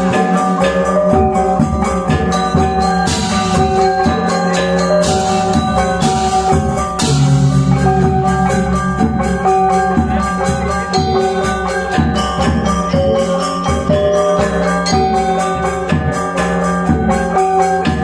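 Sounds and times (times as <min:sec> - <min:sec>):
low gong and drum tones: 0:00.0 - 0:18.0
metallophones ringing: 0:00.0 - 0:18.0
cymbal-like crash: 0:05.2 - 0:11.0.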